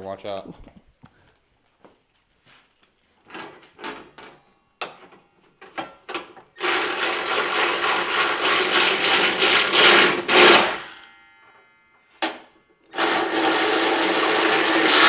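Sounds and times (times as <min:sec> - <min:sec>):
handheld power tool running: 0:06.6 - 0:11.2, 0:12.9 - 0:15.0.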